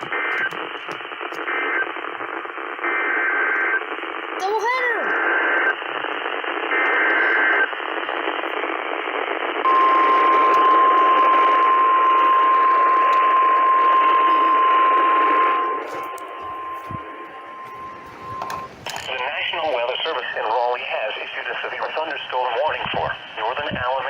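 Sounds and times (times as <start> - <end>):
radio static: 0.0 - 24.0
long steady alarm tone: 5.0 - 19.0
two-pitch data burst: 9.7 - 18.8.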